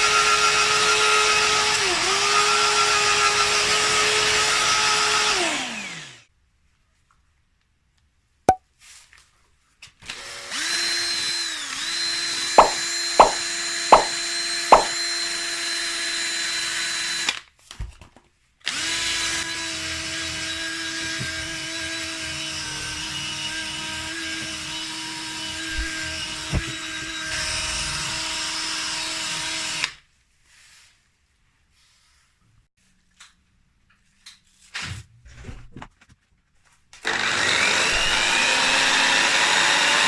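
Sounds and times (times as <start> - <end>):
electric drill buffing metal: 10.5 - 17.3, 18.7 - 29.9, 37.1 - 40.0
sharp knocks: 12.6 - 14.9.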